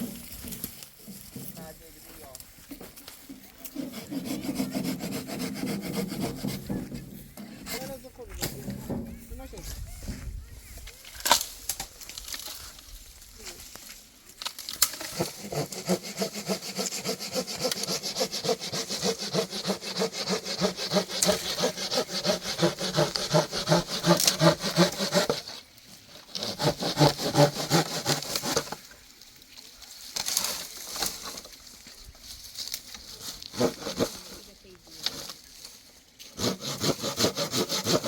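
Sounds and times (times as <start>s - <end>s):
rapid rasping strokes: 3.6s - 6.9s, 15.0s - 25.6s.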